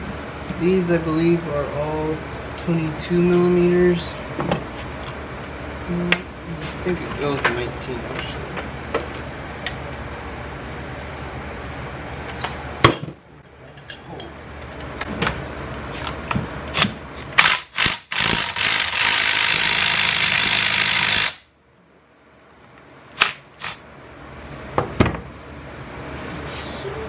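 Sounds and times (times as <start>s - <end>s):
impact wrench running: 16.8s - 21.5s.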